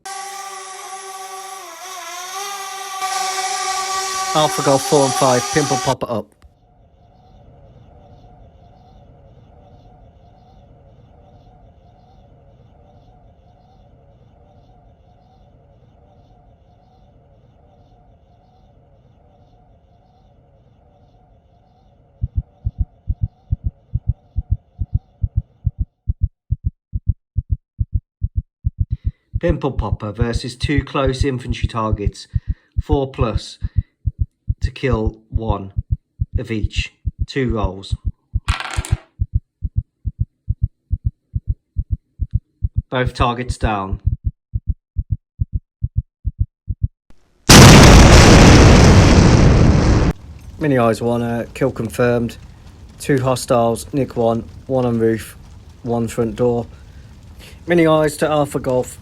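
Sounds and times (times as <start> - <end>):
fast heartbeat thumps: 22.2 - 38.5, 39.2 - 43.0, 43.9 - 47.0
explosion-like blast: 47.5 - 50.6.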